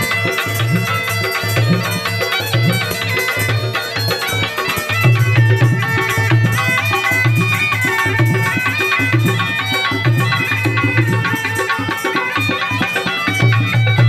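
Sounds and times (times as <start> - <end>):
drum rhythm: 0.0 - 14.0.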